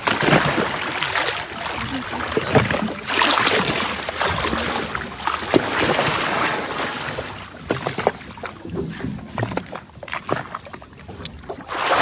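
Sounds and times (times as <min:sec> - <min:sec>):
rushing water: 0:00.0 - 0:08.2, 0:11.5 - 0:12.0.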